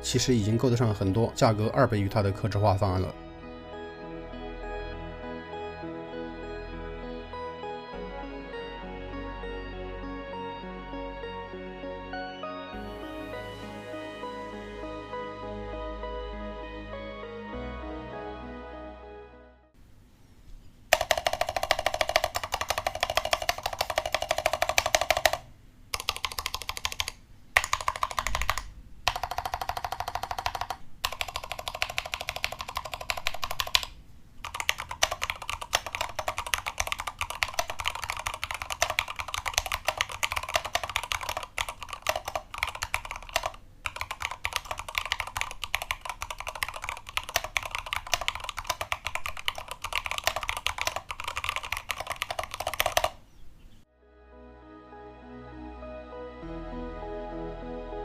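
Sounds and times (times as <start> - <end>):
background music: 0.0 - 19.8, 53.9 - 58.0
fast typing on mechanical keyboard: 20.9 - 53.2.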